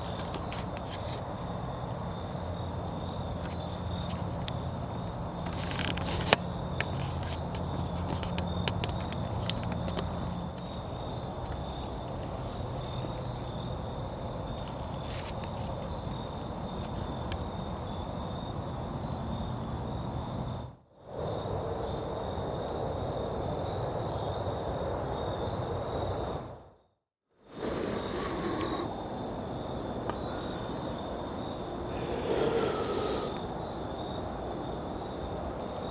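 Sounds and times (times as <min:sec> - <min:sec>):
insects trilling: 0:00.0 - 0:26.6, 0:27.5 - 0:35.9
background hiss: 0:29.8 - 0:34.3.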